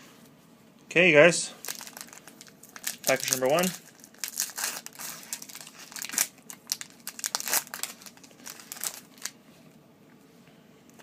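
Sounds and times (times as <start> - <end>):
card pack wrapper crinkling: 1.6 - 9.4.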